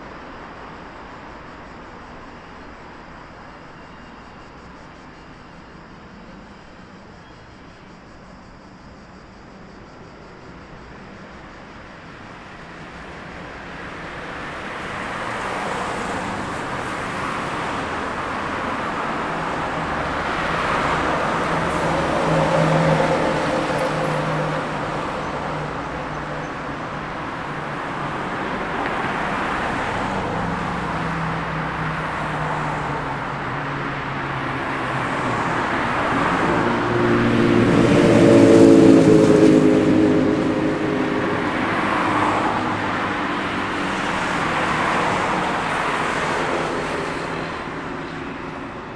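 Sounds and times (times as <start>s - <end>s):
cars passing: 12.0s - 48.9s.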